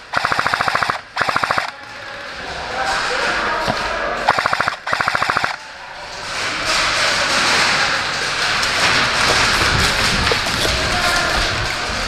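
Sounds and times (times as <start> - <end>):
airsoft gun full-auto bursts: 0.0 - 1.7, 4.3 - 5.6.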